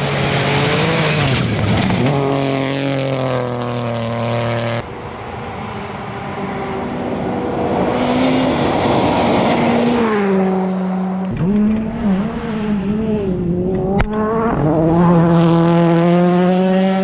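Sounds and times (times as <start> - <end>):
rally car engine revving: 0.0 - 17.0
sharp crack: 0.8 - 2.7.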